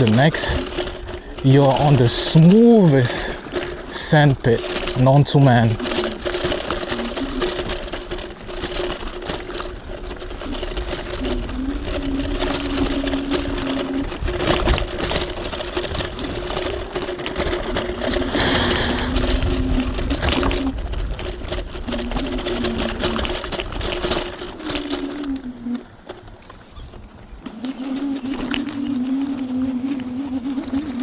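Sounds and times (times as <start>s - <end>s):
lower motor whine: 0.0s - 26.1s, 27.3s - 31.0s
tyre and wind rumble: 0.0s - 31.0s
electric motor whining: 9.9s - 21.0s, 27.5s - 31.0s.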